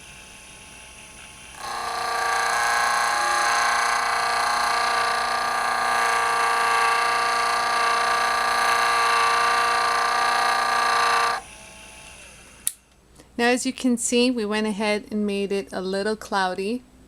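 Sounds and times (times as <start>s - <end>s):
polishing machine whining and grinding: 0.0s - 11.9s.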